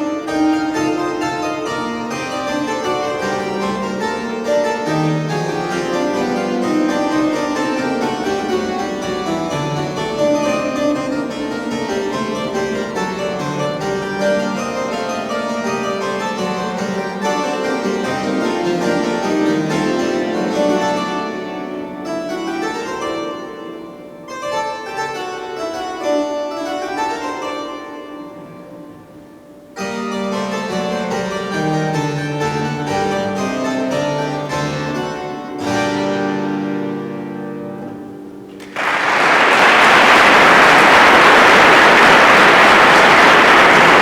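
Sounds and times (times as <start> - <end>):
harpsichord playing: 0.0 - 28.6, 29.8 - 44.0.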